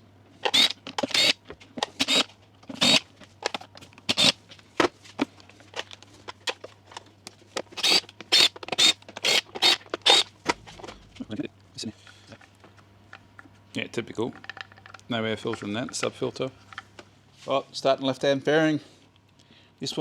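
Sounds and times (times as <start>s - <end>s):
hand tools clicking and rattling: 0.4s - 4.4s, 5.5s - 10.3s
faint low hum: 10.3s - 17.0s.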